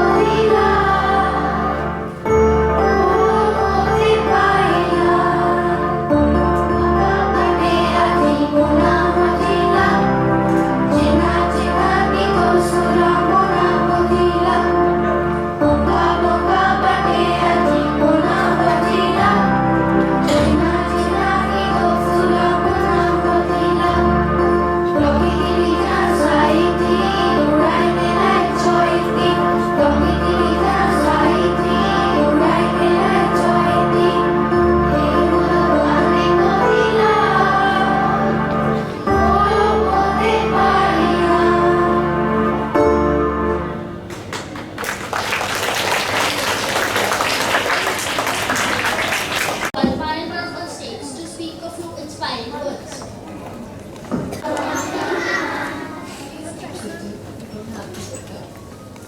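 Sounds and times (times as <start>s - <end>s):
children singing: 0.0s - 43.5s, 54.2s - 56.4s
instrumental backing music: 0.0s - 44.8s.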